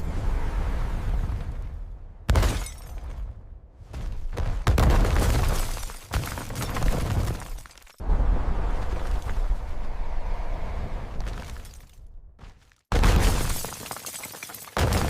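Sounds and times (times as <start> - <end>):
glass shattering and breaking: 2.3 - 3.0, 5.2 - 8.0, 13.0 - 15.0
low rumble: 8.0 - 12.4.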